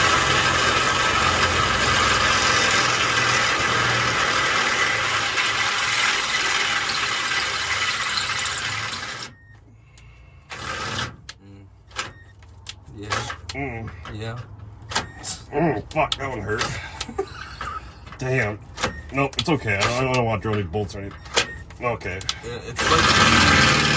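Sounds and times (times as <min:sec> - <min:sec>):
power tool motor running: 0:00.0 - 0:09.3, 0:10.5 - 0:11.2, 0:22.8 - 0:23.9.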